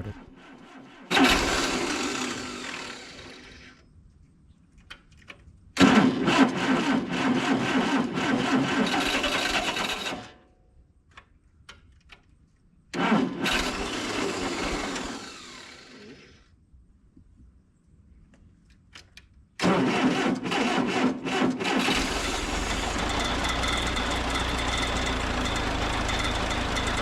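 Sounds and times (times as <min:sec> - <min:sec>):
starter cranking tractor engine: 0:00.7 - 0:03.8, 0:05.8 - 0:10.3, 0:13.0 - 0:16.2, 0:19.6 - 0:27.0.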